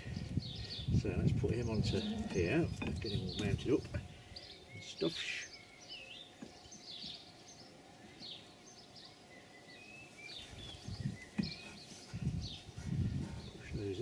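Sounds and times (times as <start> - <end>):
faint birdsong: 0.0 - 14.0
soft knocks: 11.3 - 11.7.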